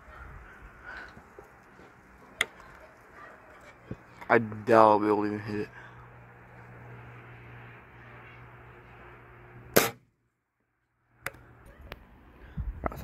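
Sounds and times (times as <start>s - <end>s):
faint steady hum: 0.1s - 12.5s
pellet rifle shot: 9.7s - 10.1s.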